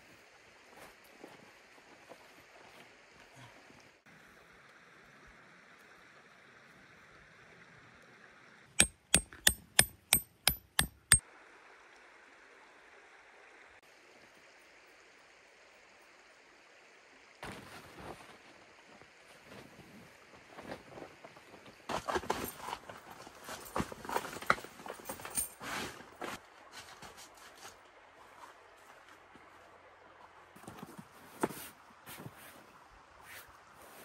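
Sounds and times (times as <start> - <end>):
sharp metal strikes: 8.8 - 11.2.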